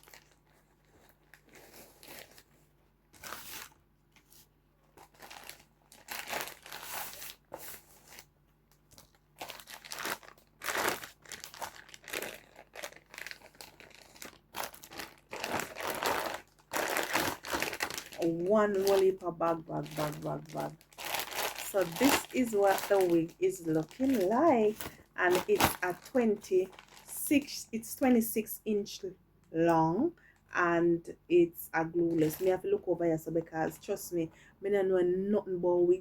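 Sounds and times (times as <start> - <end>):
packaging bag crinkling: 0.0 - 27.4.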